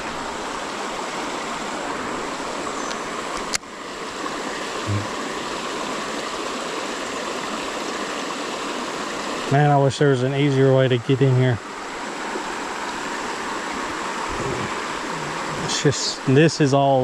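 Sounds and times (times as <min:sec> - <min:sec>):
creek water rushing: 0:00.0 - 0:17.0.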